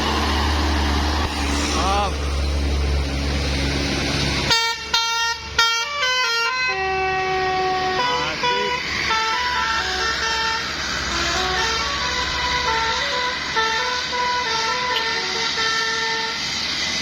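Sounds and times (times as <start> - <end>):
low engine rumble: 0.0 - 17.0
bus air horn playing a tune: 4.5 - 16.6.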